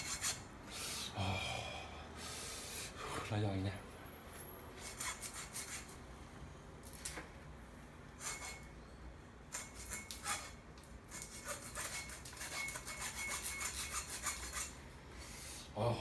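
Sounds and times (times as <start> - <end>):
blade scraping frozen fish: 8.2 - 8.6, 9.6 - 14.8.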